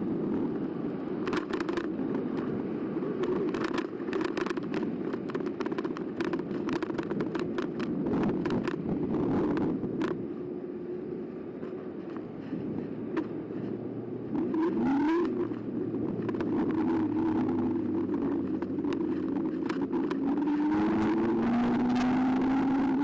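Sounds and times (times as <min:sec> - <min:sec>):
bike ride rumble: 0:00.0 - 0:23.0
clicks and rattles: 0:01.2 - 0:02.5, 0:03.2 - 0:10.2, 0:14.4 - 0:23.0.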